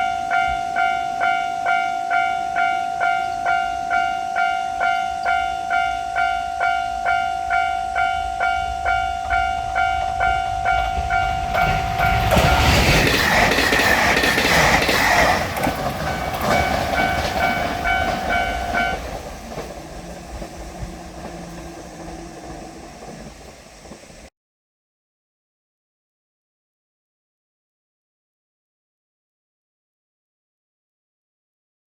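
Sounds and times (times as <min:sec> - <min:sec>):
level crossing alarm ringing: 0:00.0 - 0:23.1
diesel train passing: 0:00.0 - 0:24.3.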